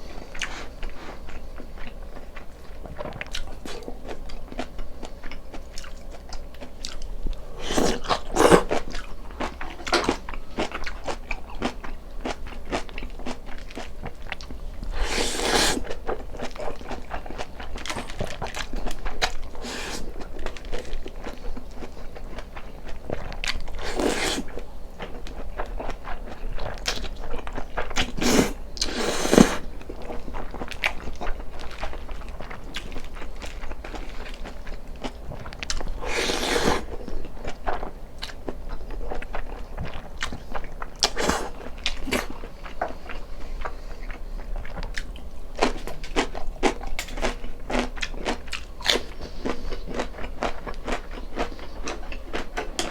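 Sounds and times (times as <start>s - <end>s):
chewing and mouth clicks: 0.3s - 52.9s
loud biting or slurping: 7.6s - 8.8s, 14.9s - 16.0s, 19.6s - 20.2s, 23.8s - 24.5s, 28.0s - 29.7s, 36.0s - 37.0s, 41.0s - 42.3s.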